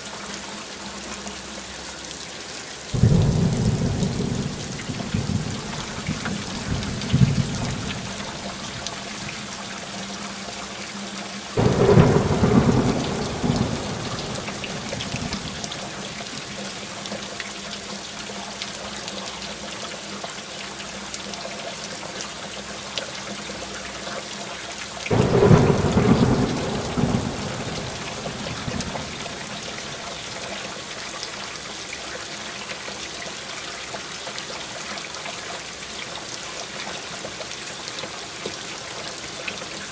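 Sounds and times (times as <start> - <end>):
steady rain: 0.0 - 39.9
thunder rumbling: 3.0 - 9.3, 11.6 - 16.6, 25.1 - 30.3.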